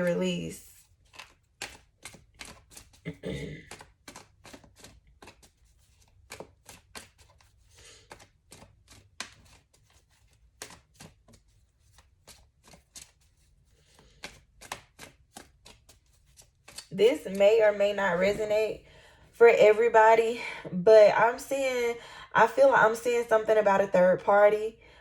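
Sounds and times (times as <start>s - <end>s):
cards shuffled and set down: 0.9s - 3.0s, 3.6s - 16.9s.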